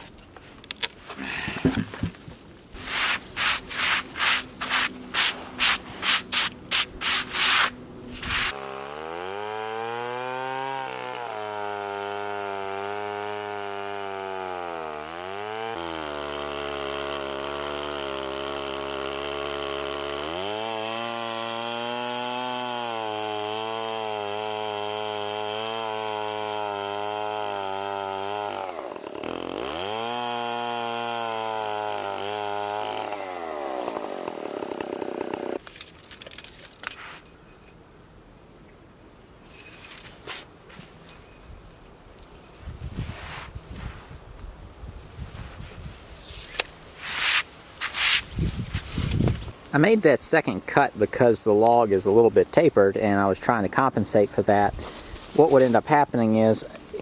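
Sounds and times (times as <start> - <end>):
rasping strokes: 2.7 - 14.3, 45.4 - 49.5
chainsaw engine running: 2.8 - 35.6.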